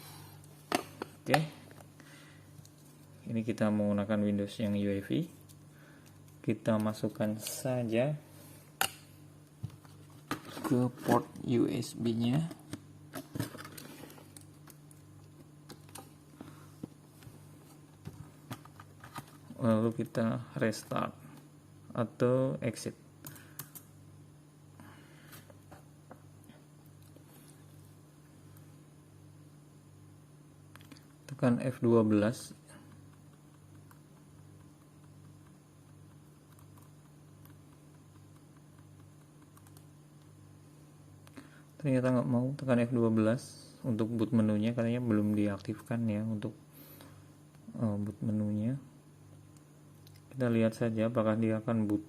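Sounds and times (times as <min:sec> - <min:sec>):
low steady hum: 0:00.0 - 0:52.0
laptop keys clicking: 0:32.9 - 0:39.9.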